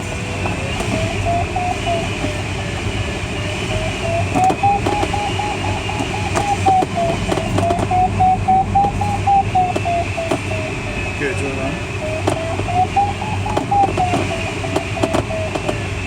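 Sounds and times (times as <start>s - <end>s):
airflow rush in cockpit: 0.0s - 16.0s
variometer beeping in short pulses: 4.0s - 10.8s.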